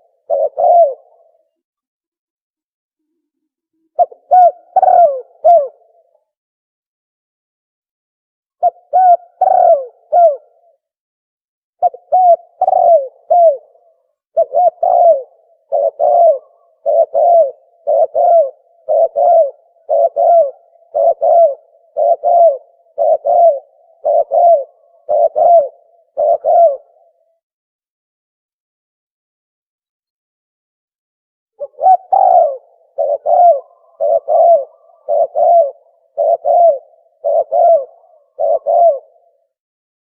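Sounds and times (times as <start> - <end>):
dove cooing: 0.0 - 1.6, 3.1 - 6.2, 8.6 - 10.8, 11.8 - 27.4, 31.6 - 39.6.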